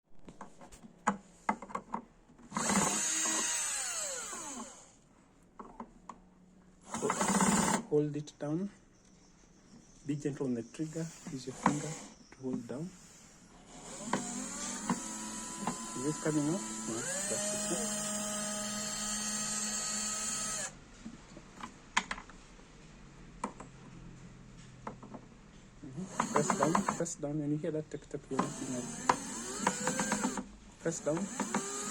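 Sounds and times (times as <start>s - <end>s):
cordless drill motor whine: 2.5s - 5.0s, 6.9s - 7.9s, 10.8s - 20.8s, 26.0s - 27.1s, 28.3s - 31.9s.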